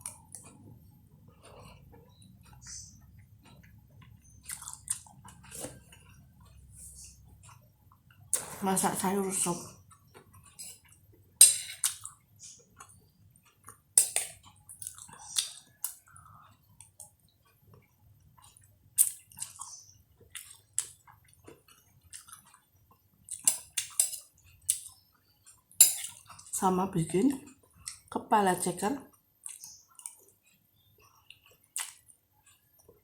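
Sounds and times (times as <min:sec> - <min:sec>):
person chewing: 0:00.0 - 0:08.6, 0:09.8 - 0:26.5, 0:29.4 - 0:33.0
mouth clicks and smacks: 0:31.4 - 0:32.2.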